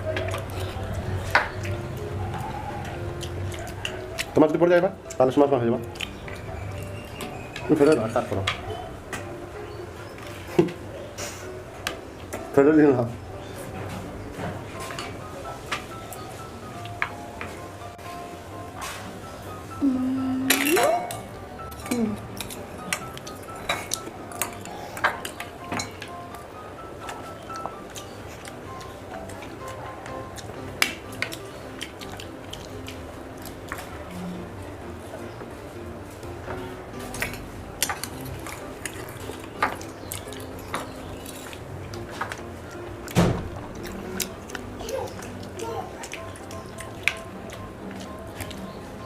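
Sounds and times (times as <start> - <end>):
background music: 0.0 - 49.0
spoon clinking against bowls: 6.0 - 8.6, 20.4 - 26.3
person humming: 19.7 - 21.0.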